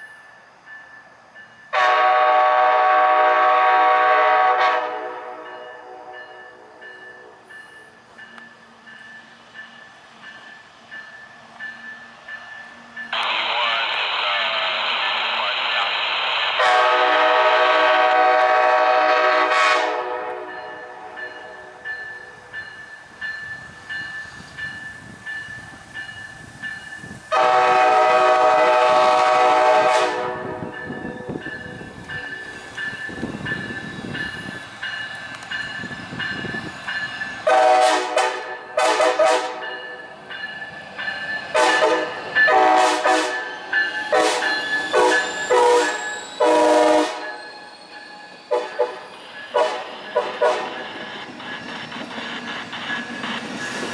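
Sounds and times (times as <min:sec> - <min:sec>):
train wheels rumbling on rails: 0:00.0 - 0:53.9
locomotive air horn chord: 0:01.7 - 0:06.2, 0:16.6 - 0:21.2, 0:27.3 - 0:30.6, 0:37.4 - 0:39.7, 0:41.6 - 0:43.4, 0:44.1 - 0:47.3, 0:49.6 - 0:50.7.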